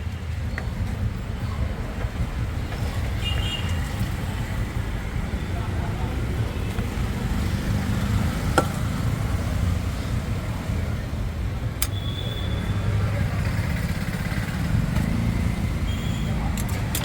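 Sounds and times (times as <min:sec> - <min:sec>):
street traffic rumble: 0:00.0 - 0:17.0
sharp clicks: 0:11.8 - 0:12.1, 0:16.5 - 0:17.0.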